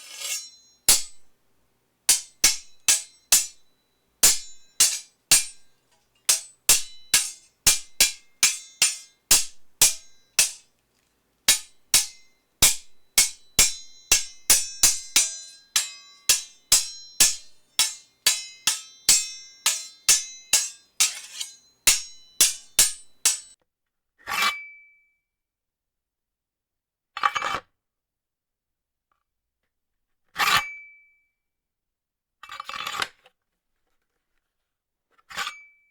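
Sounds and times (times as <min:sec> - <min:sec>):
metal sword clashes: 0:00.0 - 0:01.3, 0:02.1 - 0:10.7, 0:11.5 - 0:23.6
sword blade scraping: 0:00.0 - 0:01.3, 0:02.1 - 0:10.7, 0:11.5 - 0:23.5.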